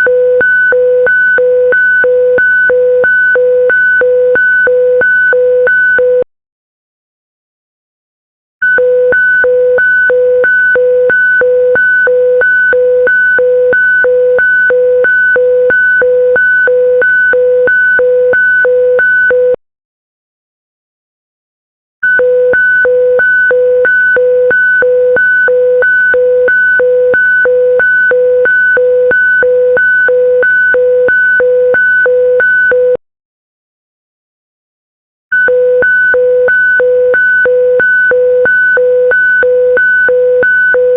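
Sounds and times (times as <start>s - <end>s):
alternating electronic alarm tone: 8.8s - 19.6s, 22.2s - 33.0s, 35.4s - 40.9s.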